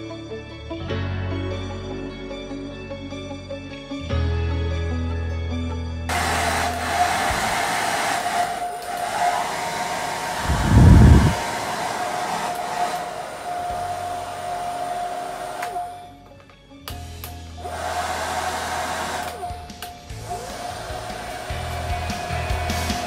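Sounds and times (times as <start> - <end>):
hair dryer blowing: 6.1 - 16.1, 17.6 - 23.0.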